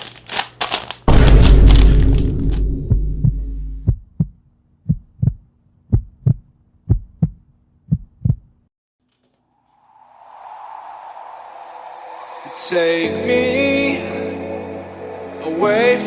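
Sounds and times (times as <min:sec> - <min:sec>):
heartbeat double thumps: 0:01.1 - 0:08.5
music: 0:13.1 - 0:16.0.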